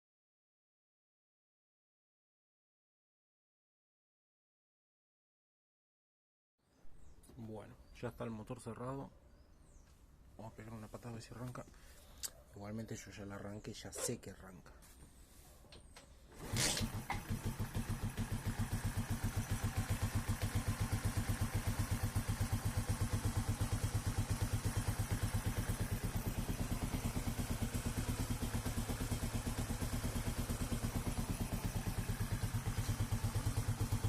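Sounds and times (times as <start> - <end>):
small engine idling: 16.3 - 34.0.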